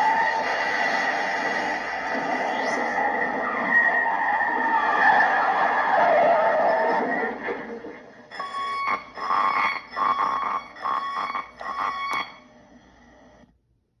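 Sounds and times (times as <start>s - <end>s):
rush of noise: 0.0s - 7.1s
electronic beeps: 8.3s - 12.4s.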